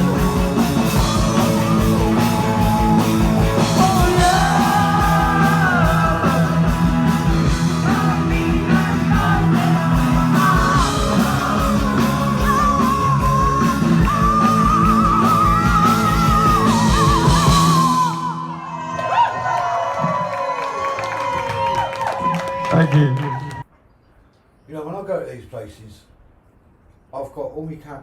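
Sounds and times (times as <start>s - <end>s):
live rock band playing: 0.0s - 18.3s.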